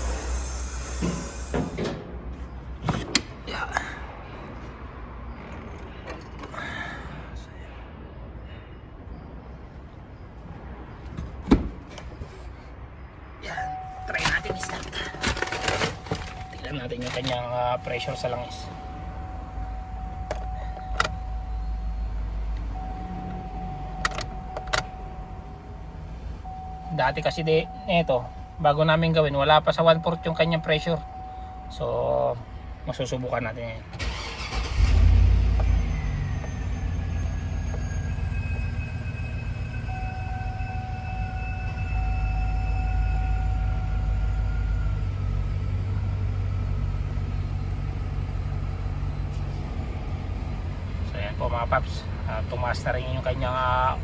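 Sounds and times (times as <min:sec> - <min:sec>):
car engine starting and running: 0:13.5 - 0:31.8, 0:32.4 - 0:54.0
steady high tone: 0:16.4 - 0:33.0, 0:36.0 - 0:45.2
engine idling: 0:34.0 - 0:38.9
faint high whine: 0:35.8 - 0:45.2.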